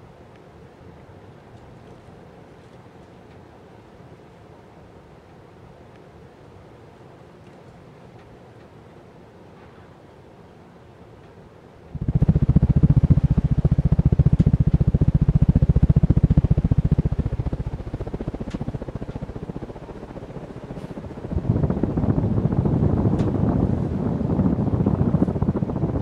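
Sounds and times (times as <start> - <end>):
fan air buffeting microphone: 11.0 - 26.0.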